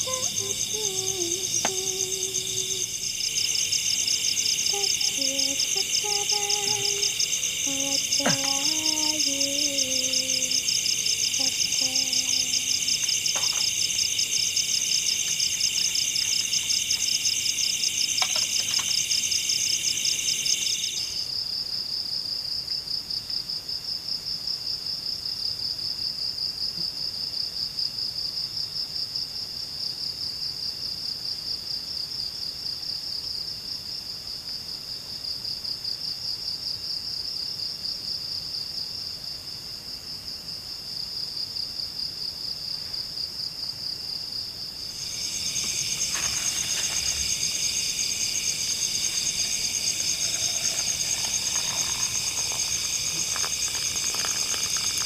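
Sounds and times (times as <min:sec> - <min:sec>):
insects trilling chorus: 0:00.0 - 0:21.6, 0:44.7 - 0:55.0.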